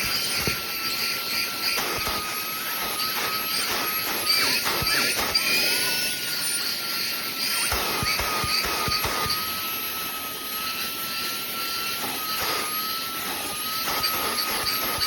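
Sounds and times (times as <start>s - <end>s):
vacuum motor whine: 0.0s - 15.0s.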